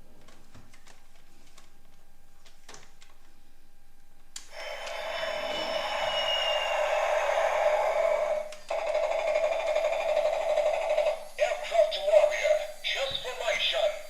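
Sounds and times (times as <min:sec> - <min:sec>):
buzzy electronic toy tone: 0:04.5 - 0:14.0
wavering voice-like electronic sound: 0:10.7 - 0:14.0.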